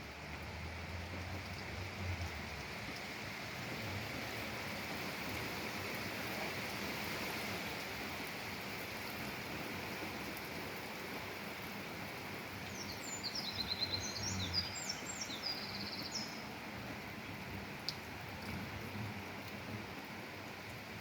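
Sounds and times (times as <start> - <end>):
steady rain: 0.0 - 21.0
songbird singing high notes: 12.7 - 16.5.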